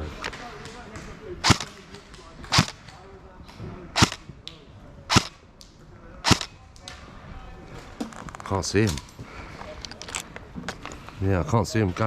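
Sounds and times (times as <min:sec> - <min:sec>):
airsoft rifle shots: 0:01.4 - 0:01.8, 0:02.5 - 0:02.8, 0:04.0 - 0:04.3, 0:05.1 - 0:05.4, 0:06.2 - 0:06.5.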